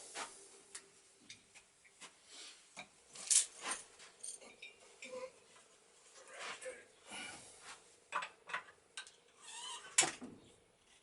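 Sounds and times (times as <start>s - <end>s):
metal tools clinking: 3.2s - 5.1s.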